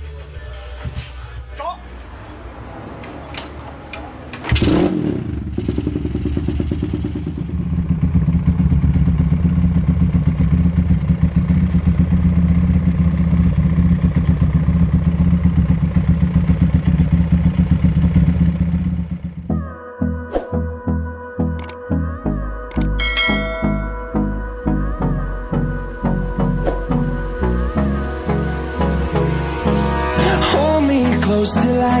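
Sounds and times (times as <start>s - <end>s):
motorcycle engine starting and running: 2.3s - 19.7s.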